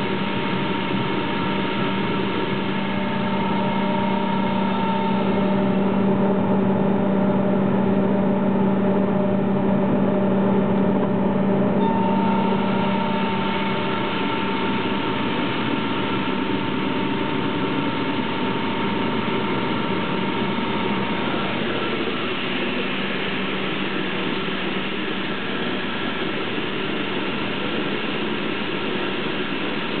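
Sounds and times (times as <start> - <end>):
air compressor humming with hiss: 0.0 - 6.4, 11.8 - 30.0
high whine: 0.0 - 30.0.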